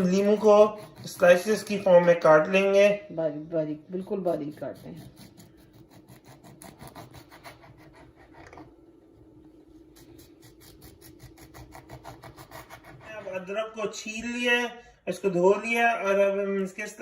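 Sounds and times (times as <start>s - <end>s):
knife slicing food: 0.0s - 2.4s, 4.0s - 8.8s, 9.7s - 13.3s.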